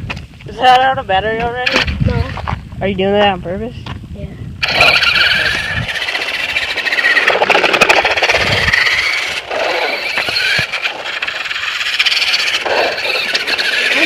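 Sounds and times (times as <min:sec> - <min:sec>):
electric motor and gears whining: 0:04.6 - 0:14.0.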